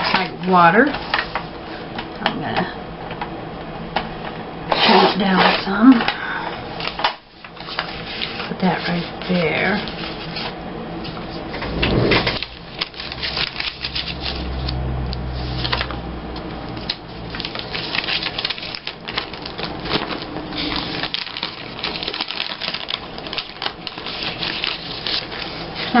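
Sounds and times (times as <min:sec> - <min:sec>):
paper rustling: 0:06.8 - 0:10.5, 0:12.3 - 0:14.4, 0:17.3 - 0:26.0.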